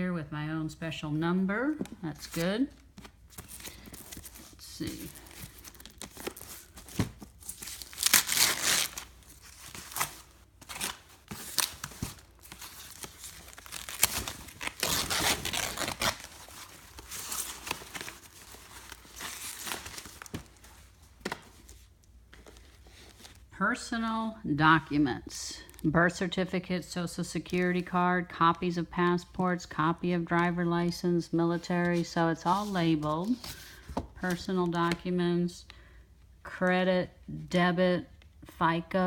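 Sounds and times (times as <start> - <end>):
packaging crinkling and tearing: 3.0 - 23.5.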